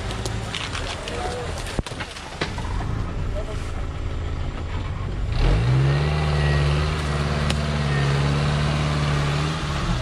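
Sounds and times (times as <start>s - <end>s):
engine revving at high revs: 5.3s - 10.0s.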